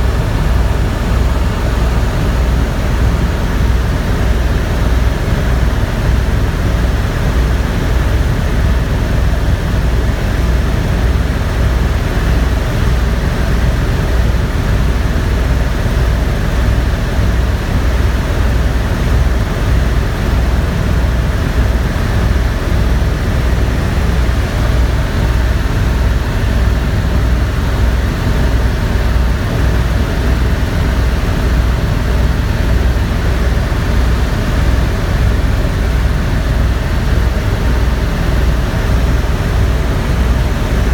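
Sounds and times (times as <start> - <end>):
helicopter engine and rotor: 0.0 - 40.9.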